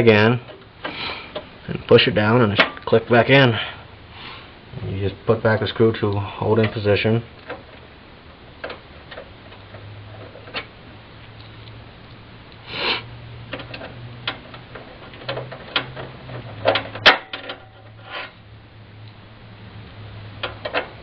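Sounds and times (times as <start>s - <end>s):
low steady hum: 0.0s - 21.0s
metal scrape: 12.7s - 18.4s.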